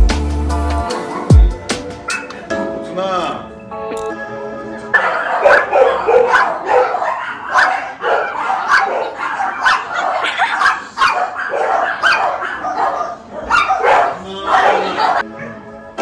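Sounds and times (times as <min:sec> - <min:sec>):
dogs barking and yipping: 0:00.9 - 0:01.4, 0:02.0 - 0:02.6, 0:04.7 - 0:15.8.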